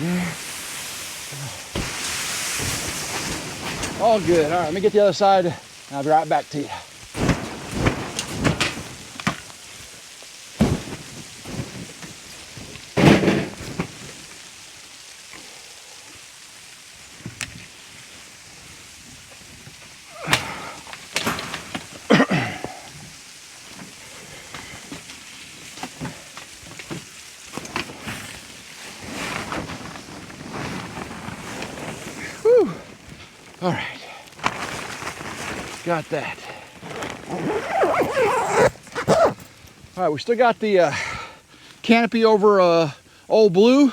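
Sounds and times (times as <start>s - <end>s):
snow sliding off tarp: 0.0s - 41.1s
heavy thumps on tarp: 1.6s - 4.8s, 7.1s - 9.6s, 10.5s - 14.2s.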